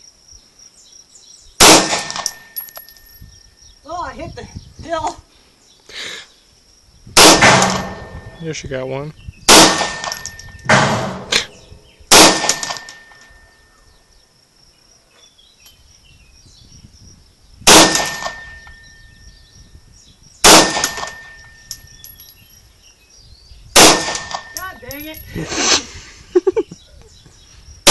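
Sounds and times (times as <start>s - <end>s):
pistol shots: 1.6s - 2.4s, 7.2s - 8.2s, 9.5s - 13.1s, 17.7s - 18.5s, 20.4s - 21.4s, 23.8s - 24.6s
high metallic ring: 12.8s - 14.1s, 18.2s - 19.4s, 21.0s - 22.6s.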